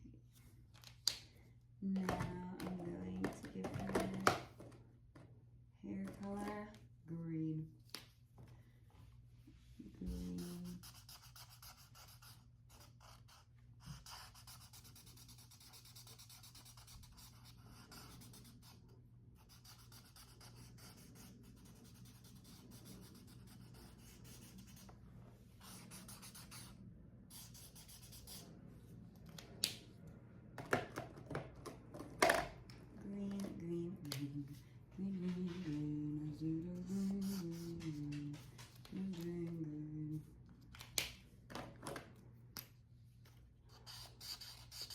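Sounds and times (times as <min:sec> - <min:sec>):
marker scratching on paper: 0:10.0 - 0:18.8, 0:19.4 - 0:24.9, 0:25.6 - 0:28.5, 0:36.9 - 0:37.7, 0:43.8 - 0:44.9.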